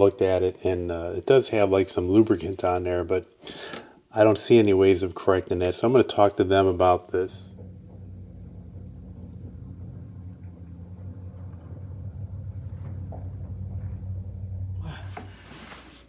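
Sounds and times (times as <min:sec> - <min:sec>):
low engine hum: 0:07.1 - 0:15.8.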